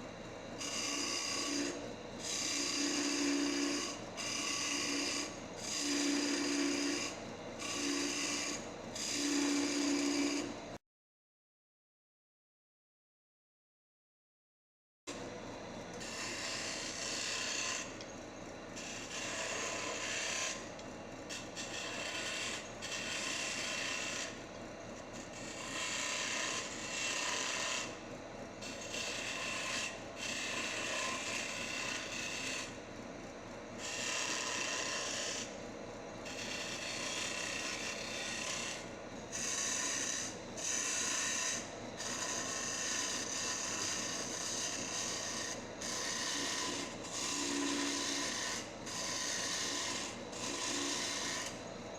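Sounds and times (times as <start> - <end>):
tool scraping spinning wood: 0.6 - 10.6, 18.8 - 24.4, 25.1 - 28.0, 33.8 - 35.6, 36.2 - 51.7
wood lathe humming: 0.6 - 10.6, 16.0 - 18.1, 18.8 - 24.4, 25.2 - 28.0, 28.6 - 32.8, 33.8 - 35.6, 36.2 - 51.7.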